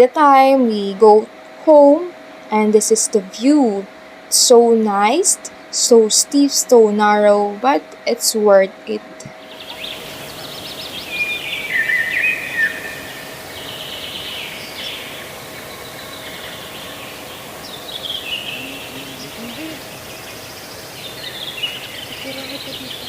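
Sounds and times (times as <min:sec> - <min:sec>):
faint steady hum: 0:00.0 - 0:23.0
birds chirping and trilling: 0:09.2 - 0:23.0.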